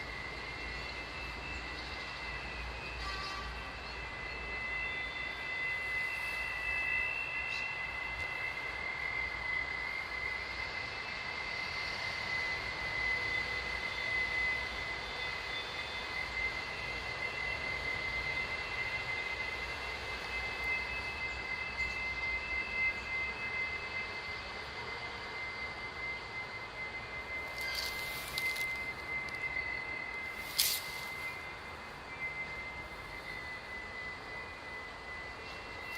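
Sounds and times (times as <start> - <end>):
shrill high-pitched creak: 27.5 - 29.4.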